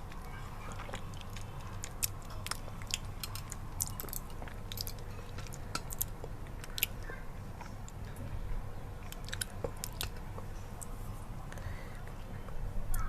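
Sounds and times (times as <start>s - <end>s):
sticky chewing clicks and smacks: 0.0s - 8.2s, 9.0s - 10.9s
steady low hum: 0.0s - 13.0s.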